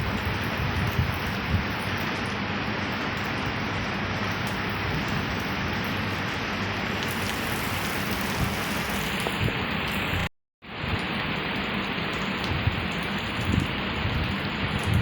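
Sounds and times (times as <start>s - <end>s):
steady rain hissing: 0.0s - 15.0s
raindrop ticks: 4.2s - 10.3s, 10.9s - 15.0s.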